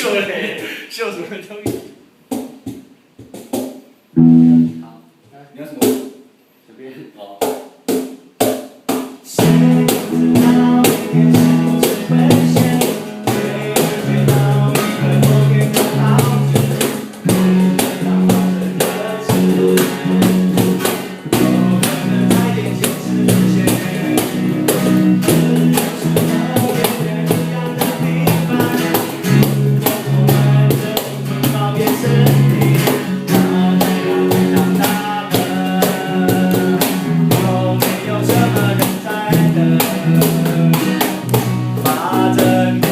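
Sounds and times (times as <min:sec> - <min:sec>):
band playing live: 0:04.2 - 0:04.8, 0:09.4 - 0:42.9
bass holding steady notes: 0:04.2 - 0:04.9, 0:09.4 - 0:38.8
dense drum beat: 0:09.4 - 0:42.9.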